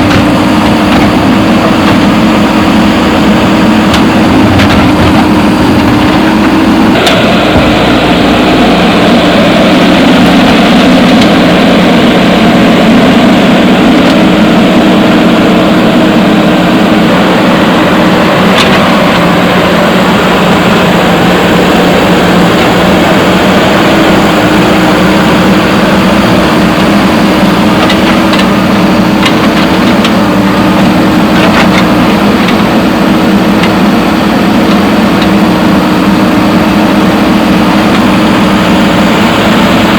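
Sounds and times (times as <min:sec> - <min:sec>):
sharp knocks: 0:00.0 - 0:08.0
diesel engine running: 0:00.0 - 0:39.9.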